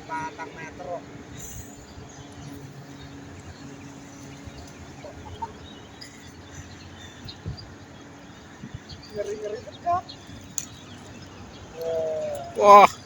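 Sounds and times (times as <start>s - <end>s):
chickens clucking: 4.3s - 6.4s.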